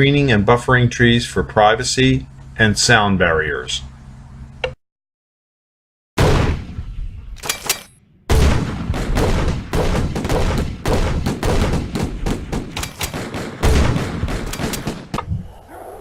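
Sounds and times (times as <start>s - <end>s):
loud bangs and cracks: 6.2s - 6.8s, 8.3s - 15.3s.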